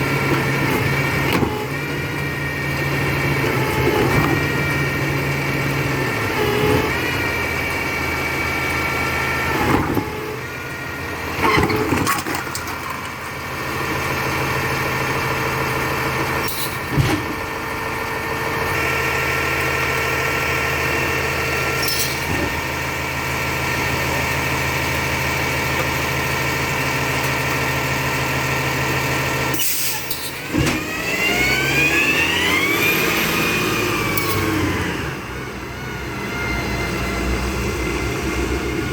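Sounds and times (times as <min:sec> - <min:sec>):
truck engine hum: 0:00.0 - 0:38.9
rising whine: 0:30.4 - 0:38.9.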